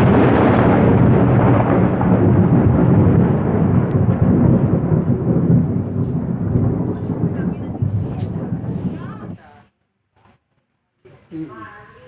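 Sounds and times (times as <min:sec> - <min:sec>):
thunder rumbling: 0:00.0 - 0:09.6.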